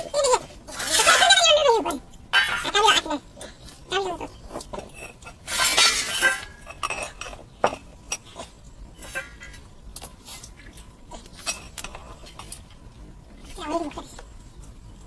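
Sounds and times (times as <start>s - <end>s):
dishes and utensils clinking: 4.5s - 12.6s.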